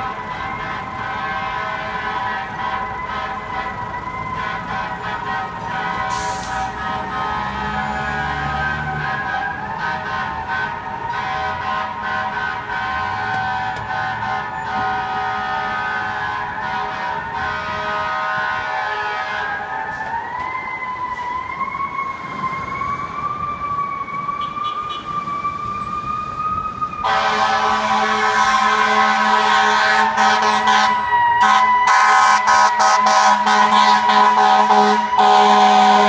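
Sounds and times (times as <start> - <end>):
siren rising in pitch: 0.0 - 11.2, 19.4 - 36.0
fire engine air horns: 0.0 - 23.5, 24.2 - 36.0.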